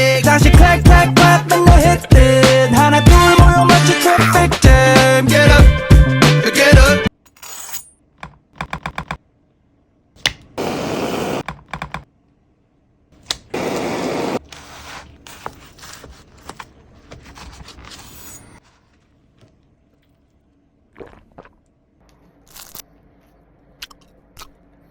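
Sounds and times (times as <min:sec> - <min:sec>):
background music: 0:00.0 - 0:07.1.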